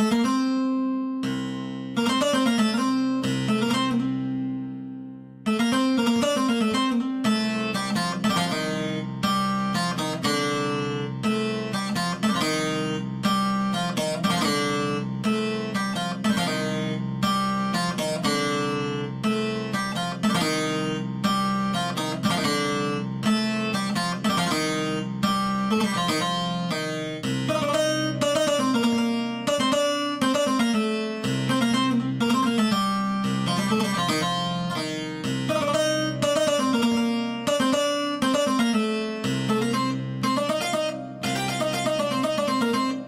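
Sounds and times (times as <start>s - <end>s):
plucked string instrument melody: 0.0s - 43.0s.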